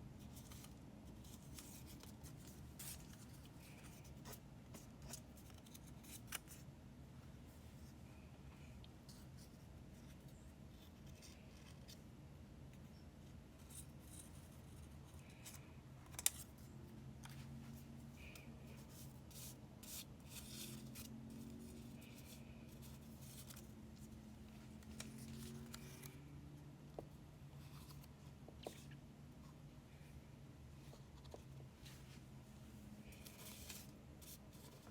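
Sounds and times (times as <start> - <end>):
paper rustling: 0.2 - 6.6, 17.2 - 26.2, 33.0 - 34.9.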